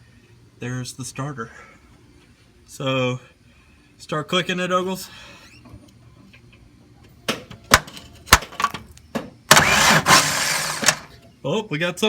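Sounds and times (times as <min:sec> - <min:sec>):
clicks and knocks at starter: 0:09.5 - 0:11.1
engine cranking: 0:09.5 - 0:11.1.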